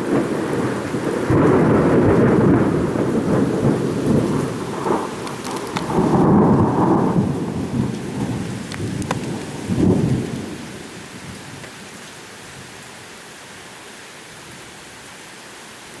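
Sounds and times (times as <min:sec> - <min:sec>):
rolling thunder: 0:00.0 - 0:11.6
steady rain: 0:00.0 - 0:16.0.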